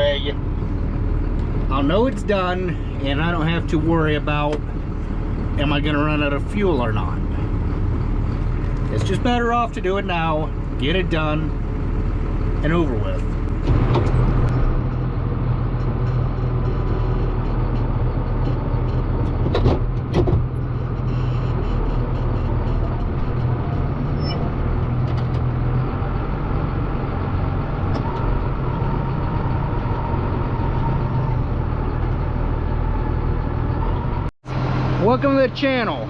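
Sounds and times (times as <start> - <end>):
tractor diesel engine idling: 0.0 - 13.6.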